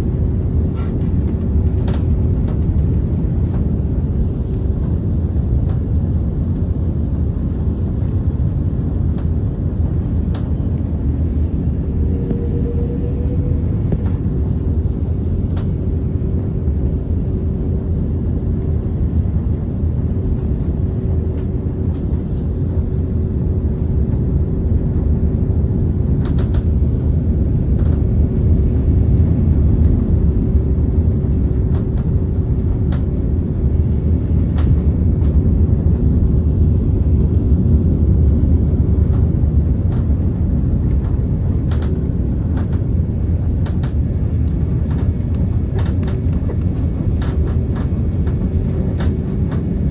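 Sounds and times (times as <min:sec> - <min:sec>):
jet cabin engine rumble: 0:00.0 - 0:49.9
thin steady hum: 0:09.0 - 0:16.8.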